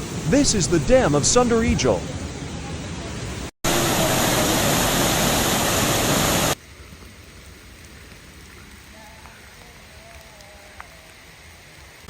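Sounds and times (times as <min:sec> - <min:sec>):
quiet steady hiss: 0:00.0 - 0:03.1
water rushing at a dam: 0:00.0 - 0:07.8.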